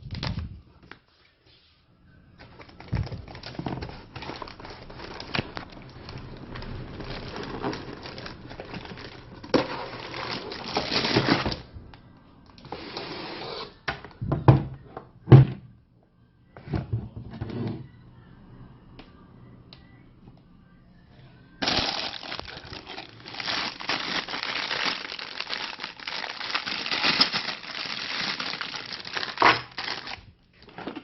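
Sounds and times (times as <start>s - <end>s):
plastic and cardboard rustling: 2.4s - 11.7s, 21.6s - 31.0s.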